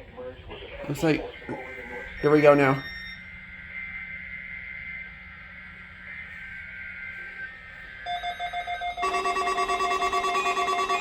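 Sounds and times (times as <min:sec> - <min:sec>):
faint radio hum: 0:00.0 - 0:08.4
rapid electronic beeping: 0:01.0 - 0:11.0
thin high tones: 0:06.2 - 0:11.0.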